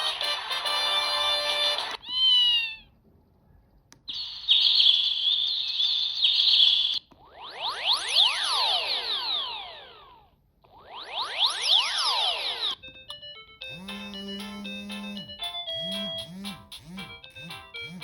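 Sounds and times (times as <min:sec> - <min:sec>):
warbling chirp tone: 0:04.2 - 0:12.8
chiming ringtone melody: 0:12.5 - 0:18.0
tone gliding down in pitch: 0:13.7 - 0:18.0.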